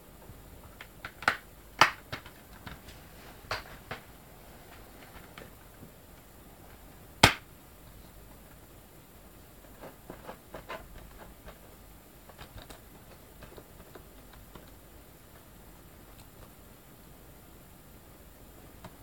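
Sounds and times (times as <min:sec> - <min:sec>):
plastic cases clicking and tapping: 0:00.7 - 0:02.8, 0:03.5 - 0:04.1
plastic case snapping: 0:00.8 - 0:02.8, 0:07.2 - 0:07.4.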